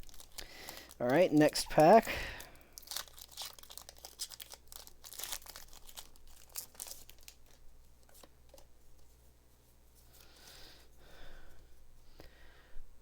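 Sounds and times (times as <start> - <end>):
foil wrapper crinkling: 0.0 - 8.7.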